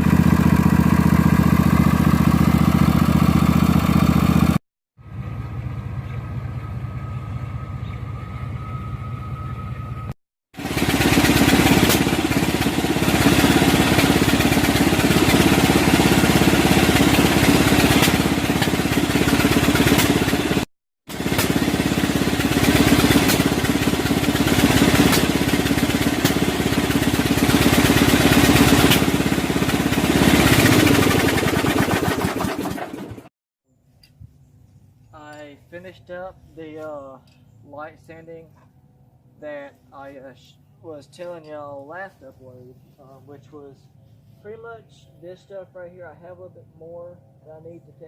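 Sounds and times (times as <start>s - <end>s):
power sander running: 0.0s - 4.6s, 10.6s - 33.2s.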